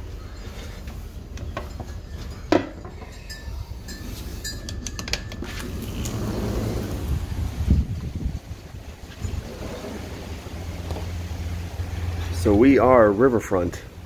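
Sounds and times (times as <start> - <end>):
metallic clinks and knocks: 0.3 - 6.1
wind rumble on microphone: 5.6 - 12.5.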